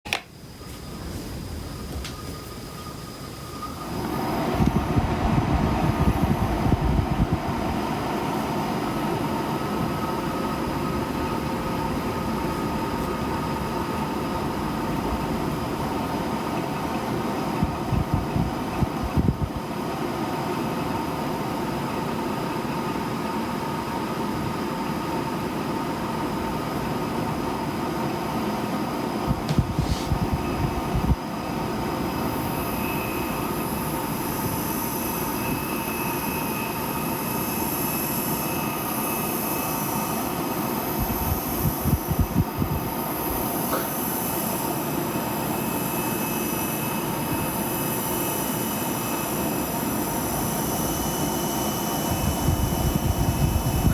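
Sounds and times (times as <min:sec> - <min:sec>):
fan airflow hum: 0:00.1 - 0:53.9
high-pitched whine: 0:00.2 - 0:19.6, 0:29.2 - 0:53.9.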